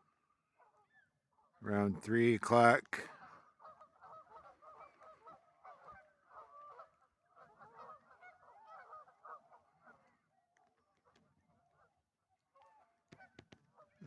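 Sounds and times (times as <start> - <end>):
waterfowl calling: 3.1 - 10.0.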